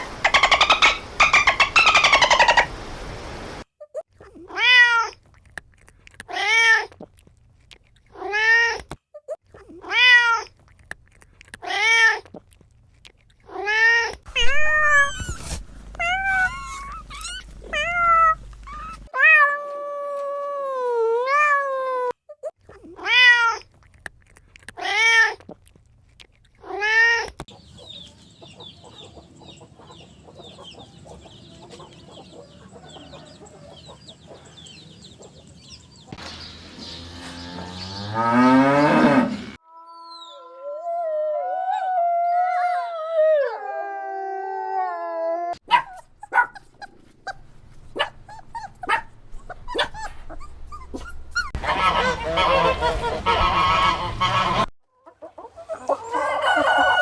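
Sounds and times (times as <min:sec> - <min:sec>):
cats meowing: 0:16.0 - 0:20.2, 0:27.7 - 0:36.1.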